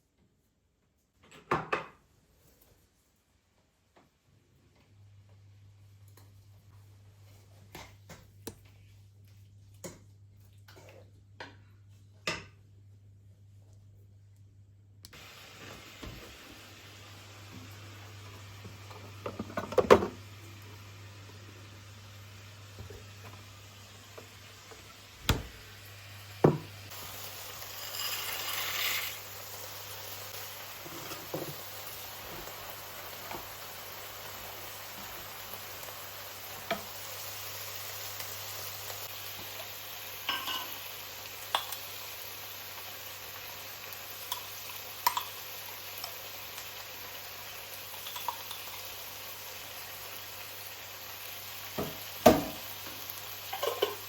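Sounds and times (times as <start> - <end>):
food sizzling in a frying pan: 15.1 - 54.0.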